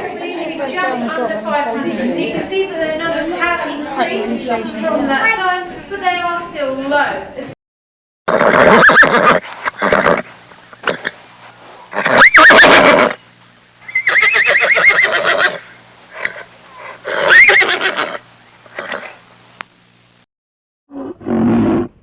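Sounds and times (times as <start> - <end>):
horse neighing: 8.3 - 11.2, 11.9 - 13.2, 13.9 - 19.2.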